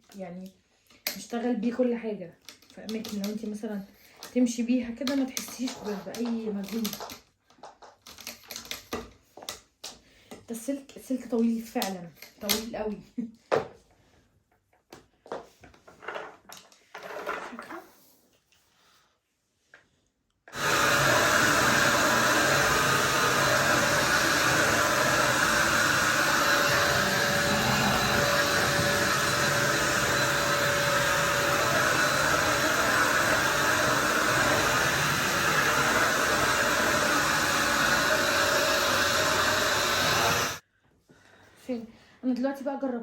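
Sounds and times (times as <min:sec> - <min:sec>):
vacuum cleaner running: 0:20.5 - 0:40.6.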